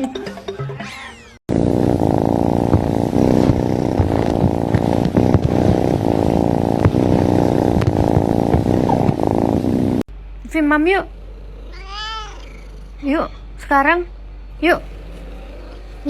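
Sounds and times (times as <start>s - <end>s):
cat purring: 1.5s - 10.1s, 11.0s - 13.5s, 14.6s - 16.0s.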